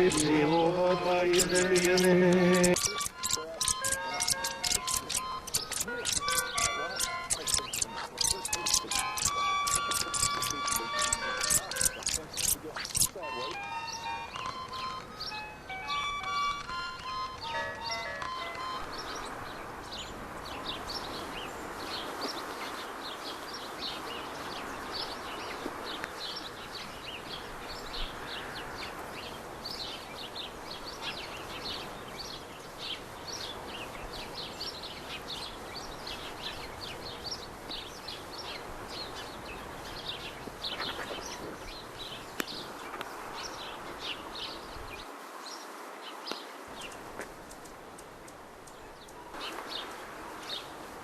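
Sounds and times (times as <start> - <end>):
steady background hiss: 0.0 - 14.3
small birds chirping: 0.0 - 16.7, 18.8 - 50.7.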